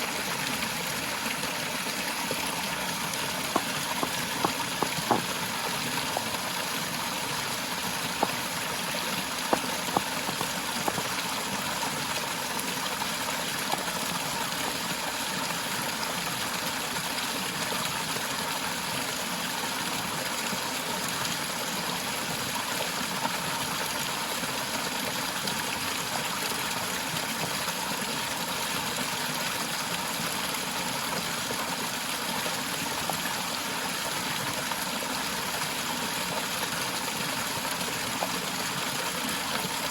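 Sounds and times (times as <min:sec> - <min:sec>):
waterfall rushing: 0:01.9 - 0:13.4.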